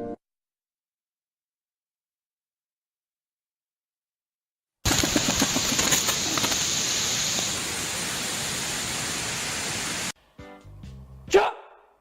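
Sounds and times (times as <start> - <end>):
loud rushing hiss: 4.9 - 10.2.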